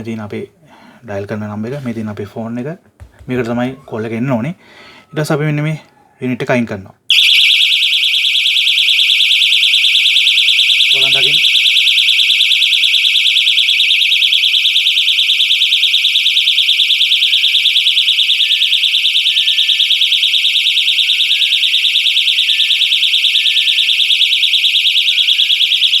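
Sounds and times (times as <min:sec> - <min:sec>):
alarm siren warbling: 0:07.1 - 0:26.0.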